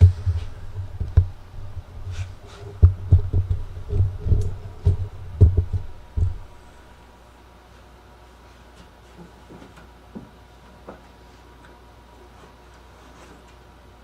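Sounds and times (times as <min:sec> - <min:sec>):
low thumps and knocks: 0:00.0 - 0:07.1.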